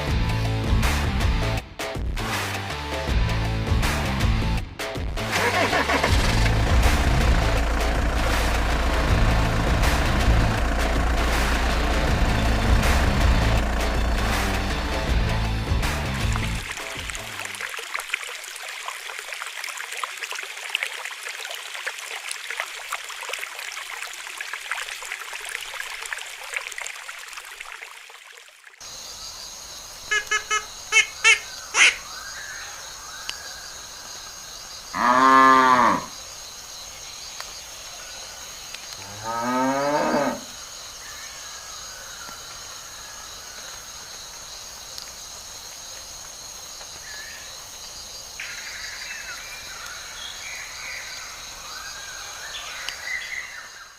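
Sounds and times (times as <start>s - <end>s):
high insect chirring: 28.9s - 51.9s
cow mooing: 35.0s - 36.1s, 39.0s - 40.5s.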